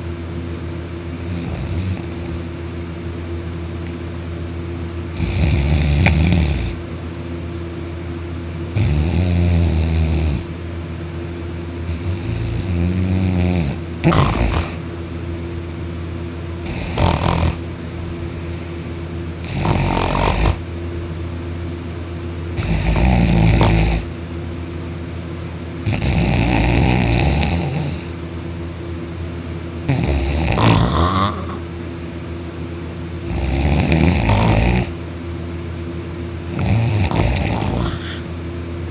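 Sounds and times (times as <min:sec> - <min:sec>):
steady low hum: 0:00.0 - 0:38.9
person snoring loudly: 0:01.2 - 0:02.4, 0:05.1 - 0:06.8, 0:08.8 - 0:10.5, 0:11.9 - 0:14.8, 0:16.6 - 0:17.6, 0:19.4 - 0:20.6, 0:22.6 - 0:24.1, 0:25.8 - 0:28.1, 0:29.9 - 0:31.7, 0:33.2 - 0:35.0, 0:36.5 - 0:38.4.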